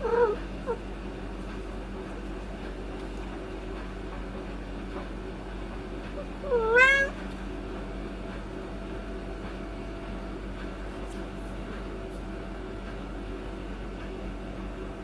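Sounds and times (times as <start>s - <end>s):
cat meowing: 0.0s - 0.8s, 6.4s - 7.2s.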